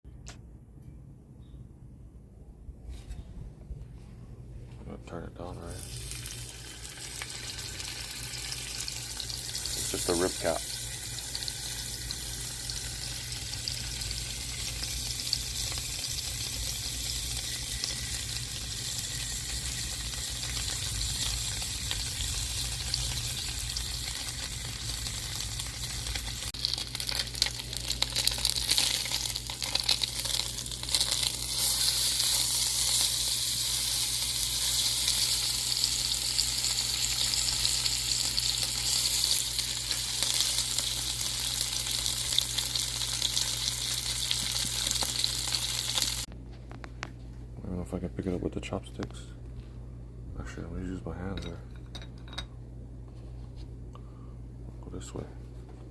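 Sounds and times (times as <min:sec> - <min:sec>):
crackling fat spatters: 0:05.8 - 0:46.3
meat sizzling in a pan: 0:05.8 - 0:46.3.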